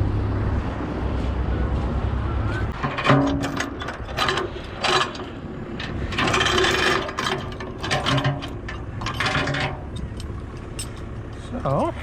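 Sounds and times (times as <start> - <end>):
excavator engine hum: 0.0 - 12.0
excavator scraping and grinding: 2.6 - 11.4.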